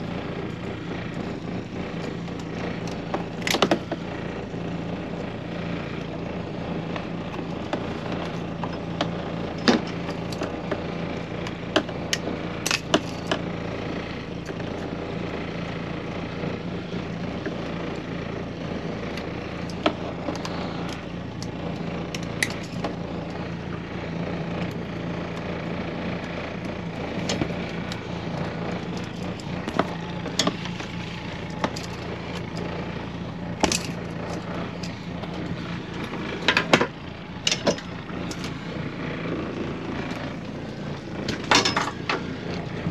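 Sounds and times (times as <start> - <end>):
motor humming: 0.0 - 42.9
sharp clicks and knocks: 27.2 - 32.7, 36.0 - 38.6.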